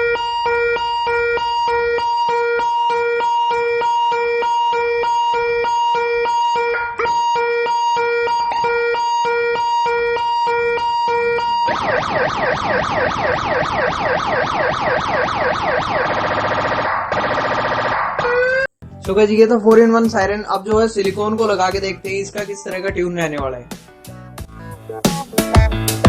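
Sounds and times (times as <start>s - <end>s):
electronic siren cycling tones: 0.0s - 18.7s.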